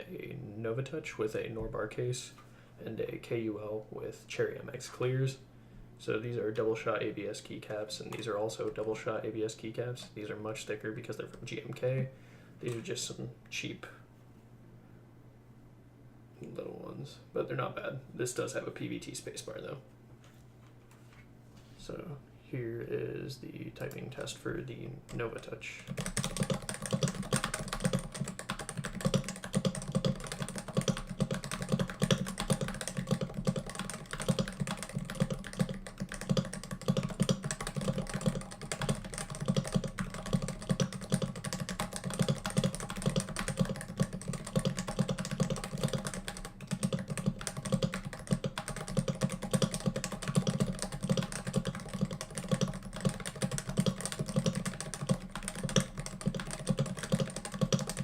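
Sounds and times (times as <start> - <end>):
keyboard typing: 25.8 - 58.0.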